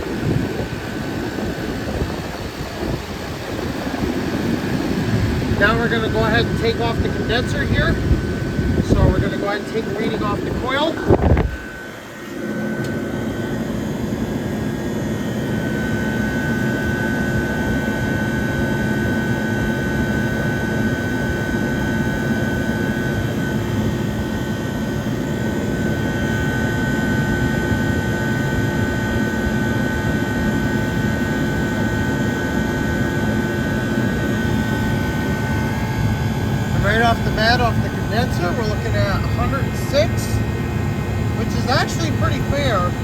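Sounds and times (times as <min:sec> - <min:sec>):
air conditioner fan blowing: 0:00.0 - 0:43.0
compressor humming: 0:00.0 - 0:43.0
steady whine: 0:00.0 - 0:43.0.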